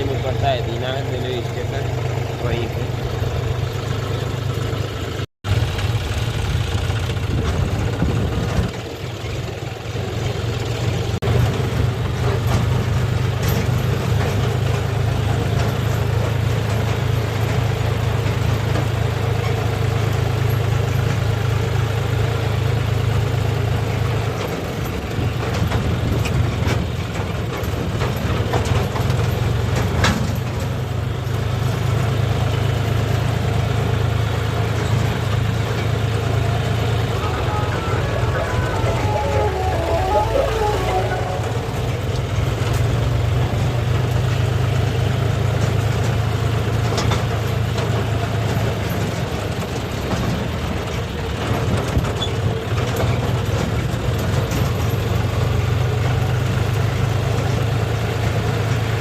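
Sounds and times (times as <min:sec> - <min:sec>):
tractor engine droning: 0:00.0 - 0:59.0
knocks and rattles: 0:24.2 - 0:32.1.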